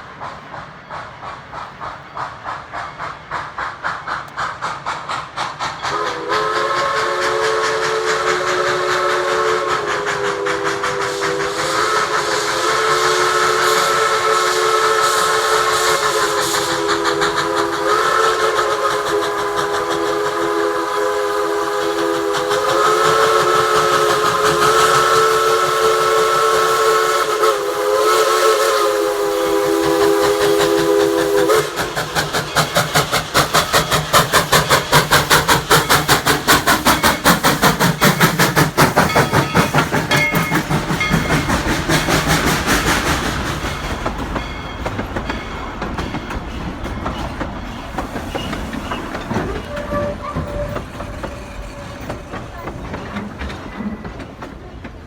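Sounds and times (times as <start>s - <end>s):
locomotive exhaust beat: 0.0s - 55.0s
steam whistle blast: 5.9s - 32.4s, 49.3s - 51.2s.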